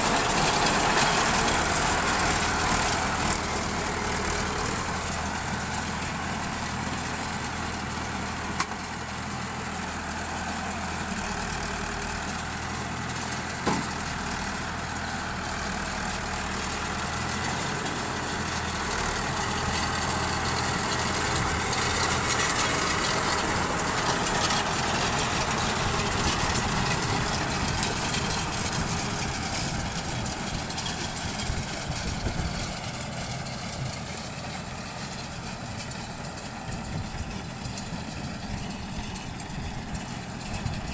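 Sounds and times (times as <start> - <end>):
tractor engine running: 0.0 - 40.9.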